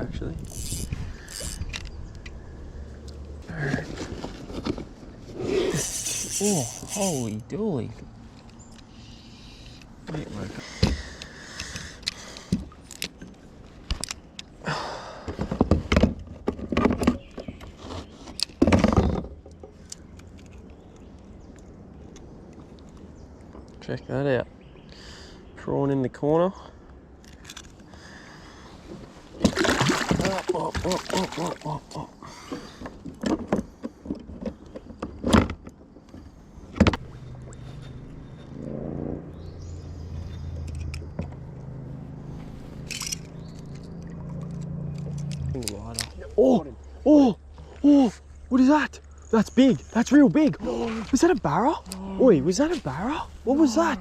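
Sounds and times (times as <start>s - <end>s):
knocks and rattles of gear: 0.0s - 2.3s, 42.8s - 46.2s
low motor hum: 36.2s - 49.2s.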